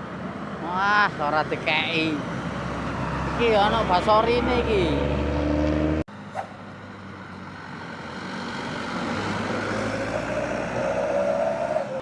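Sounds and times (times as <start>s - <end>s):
heavy vehicle engine and tyres: 0.0s - 12.0s.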